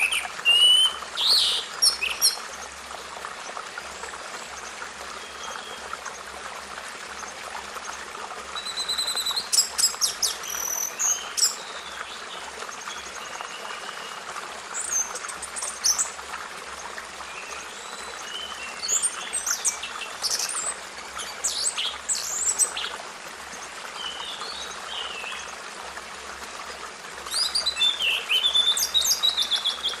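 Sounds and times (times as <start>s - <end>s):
birds chirping and trilling: 0.0s - 2.4s, 27.3s - 30.0s.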